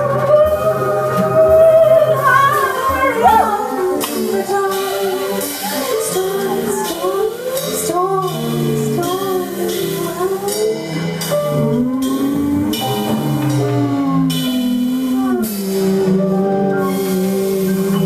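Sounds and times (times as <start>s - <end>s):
bass: 0.0s - 18.0s
drum kit with cymbals: 0.0s - 18.0s
piano: 0.0s - 18.0s
woman singing: 0.0s - 18.0s.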